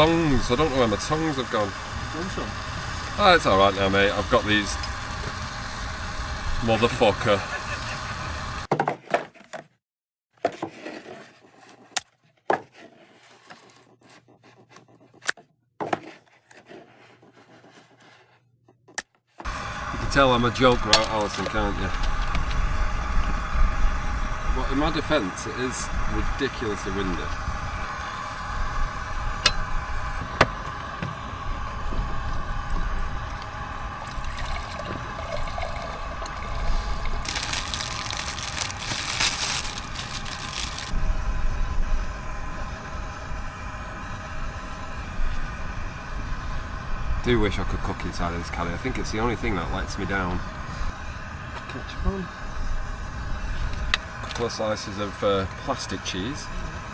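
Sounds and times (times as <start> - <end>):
wind buffeting microphone: 19.5 - 38.9.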